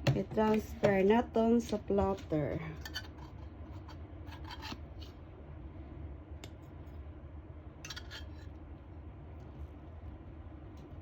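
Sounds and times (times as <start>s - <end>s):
cooking utensil scraping: 2.8s - 5.2s, 7.8s - 8.6s.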